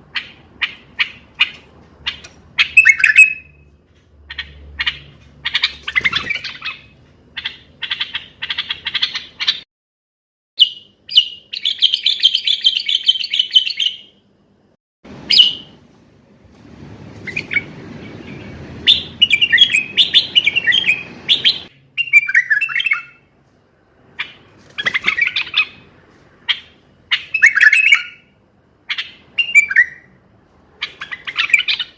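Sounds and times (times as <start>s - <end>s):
bulbul singing: 0.1s - 3.7s, 17.2s - 23.3s, 26.5s - 30.1s.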